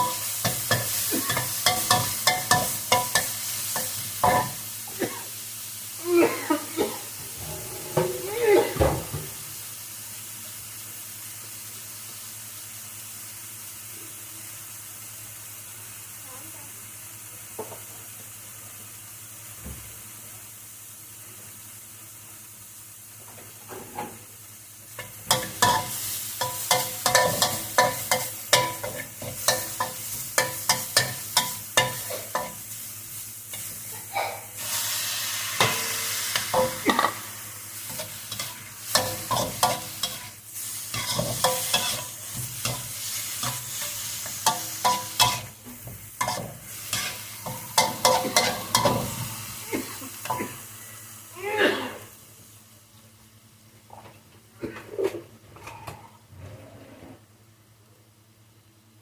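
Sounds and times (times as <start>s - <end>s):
food sizzling in a hot pan: 0.0s - 53.7s
spatula scraping against pan: 37.9s - 49.2s.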